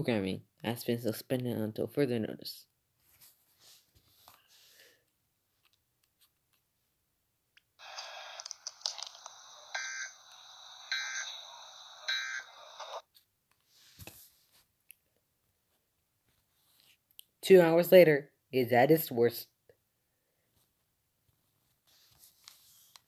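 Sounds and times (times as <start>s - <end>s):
steady harsh noise: 7.8s - 13.0s
screeching digital data bursts: 9.5s - 13.0s.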